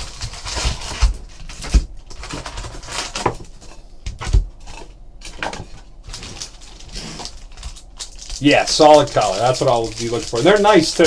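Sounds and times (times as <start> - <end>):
cards shuffling: 6.2 - 11.0.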